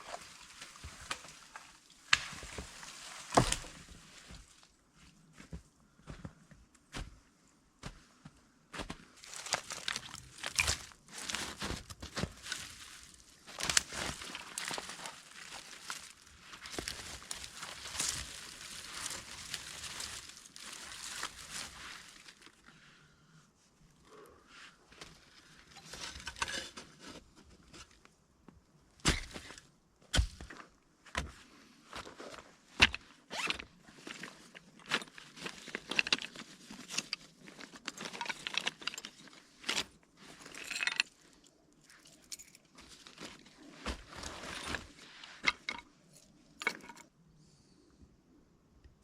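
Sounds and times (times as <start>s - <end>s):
rustling and scraping handling noise: 0.0s - 5.6s, 8.8s - 22.6s, 25.0s - 28.2s, 31.2s - 47.1s.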